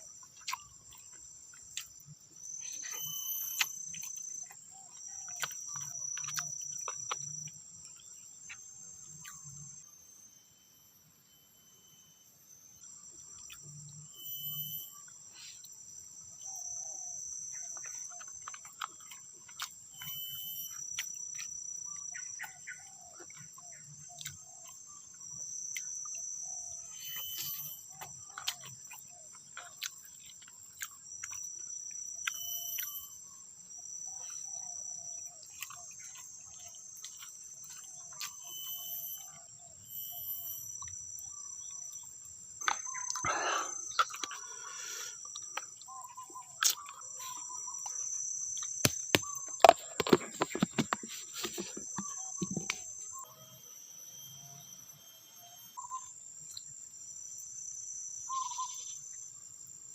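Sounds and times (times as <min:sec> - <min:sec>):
insects shrilling: 0:00.0 - 0:59.9
sharp clicks and knocks: 0:48.9 - 0:52.8.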